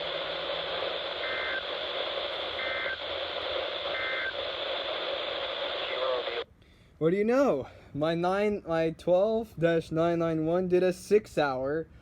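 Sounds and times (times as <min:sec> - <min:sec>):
radio static: 0:00.0 - 0:06.5
two-tone digital data bursts: 0:01.1 - 0:04.4.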